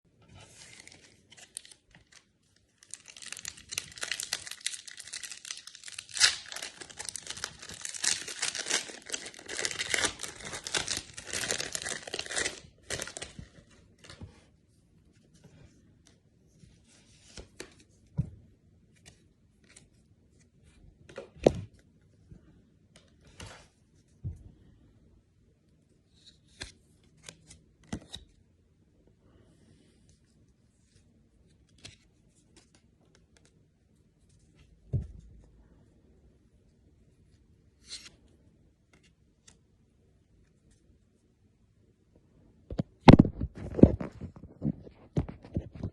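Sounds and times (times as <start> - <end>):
foil wrapper tearing and crinkling: 2.8 - 13.2.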